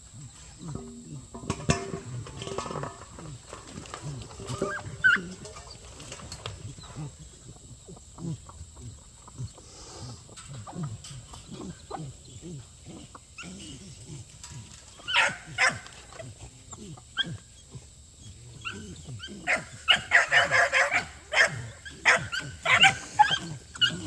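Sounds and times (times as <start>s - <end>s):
dogs growling: 0.0s - 24.0s
dogs barking: 3.9s - 7.2s, 10.6s - 24.0s.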